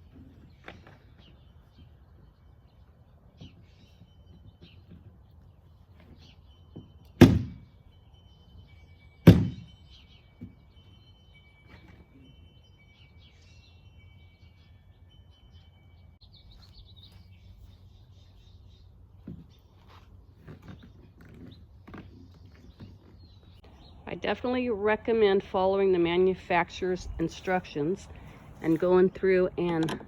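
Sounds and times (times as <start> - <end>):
hollow plastic thunks: 7.2 - 7.6, 9.3 - 9.7.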